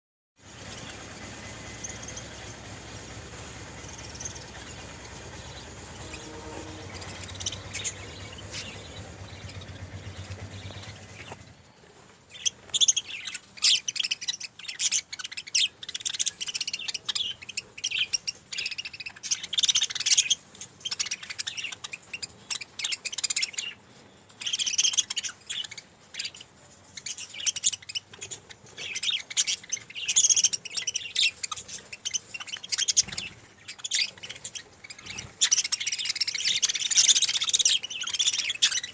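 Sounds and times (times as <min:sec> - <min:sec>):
budgerigars chirping: 0:00.4 - 0:38.9
steady low hum: 0:00.4 - 0:38.9.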